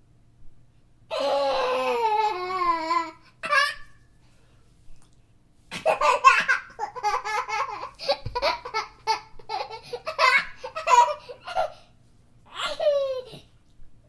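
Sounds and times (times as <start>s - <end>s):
baby laughing: 1.1s - 3.9s, 5.7s - 11.8s, 12.5s - 13.5s.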